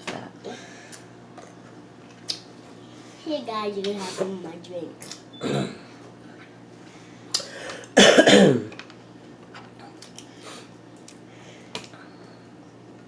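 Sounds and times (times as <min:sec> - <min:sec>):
person coughing: 0:05.4 - 0:05.8, 0:08.0 - 0:08.7.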